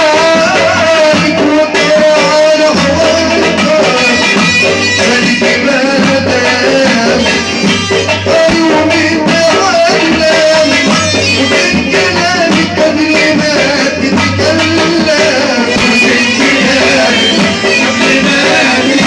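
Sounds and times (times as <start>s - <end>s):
percussion beat: 0.0s - 19.0s
wavering song melody: 0.0s - 19.0s.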